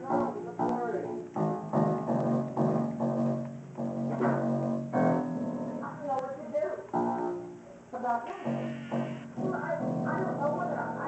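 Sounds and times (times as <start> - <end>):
instrumental music with held notes: 0.0 - 5.8.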